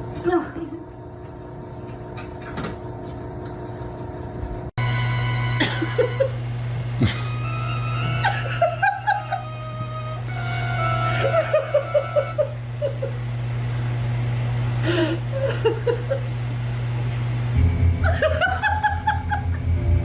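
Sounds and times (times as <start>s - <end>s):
steady low hum: 0.0s - 20.0s
person laughing: 5.6s - 6.4s, 7.0s - 9.6s, 11.1s - 13.2s, 14.8s - 16.4s, 18.0s - 19.7s
pulsing low sound: 17.5s - 20.0s.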